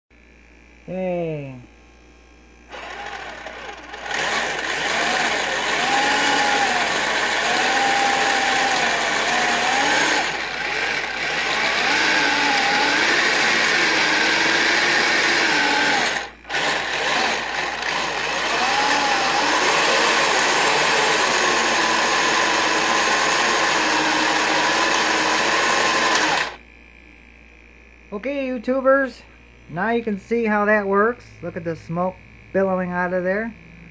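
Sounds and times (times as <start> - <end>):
toy vehicle motor whirring: 2.7 - 26.6.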